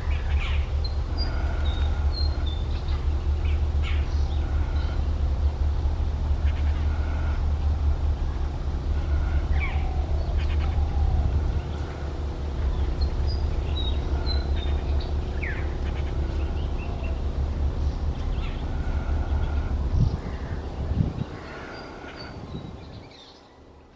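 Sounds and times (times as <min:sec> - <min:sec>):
birds calling and chattering: 0:00.0 - 0:23.9
steady low rumble: 0:00.0 - 0:23.9.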